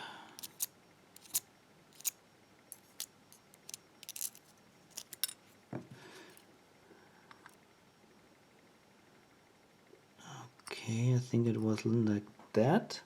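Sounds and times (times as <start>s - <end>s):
small metal lock parts clicking: 0.4s - 1.4s, 2.0s - 5.4s.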